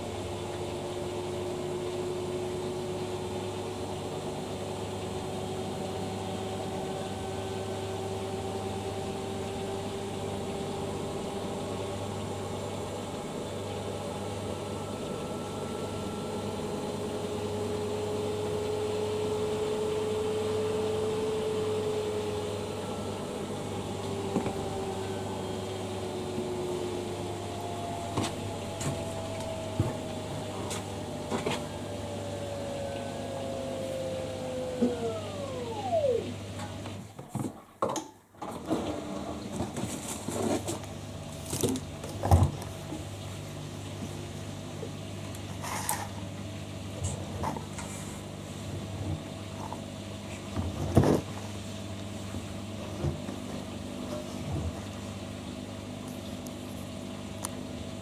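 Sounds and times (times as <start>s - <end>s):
washing machine motor whine: 0.0s - 58.0s
drum slowing whine: 13.4s - 17.9s, 21.2s - 36.9s.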